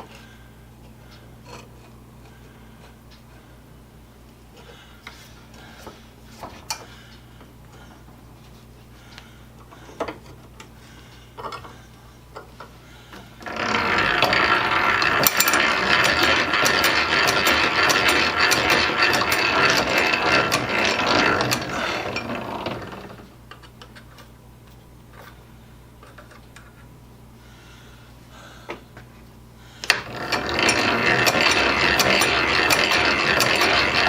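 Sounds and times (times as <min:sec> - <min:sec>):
hand-cranked drill ratcheting: 0:13.4 - 0:23.3, 0:29.9 - 0:34.0.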